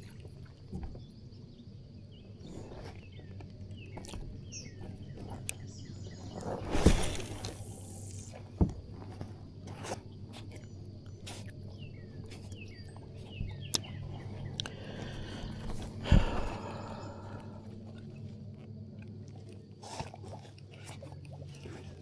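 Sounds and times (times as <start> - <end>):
rushing swish: 6.6 - 8.2.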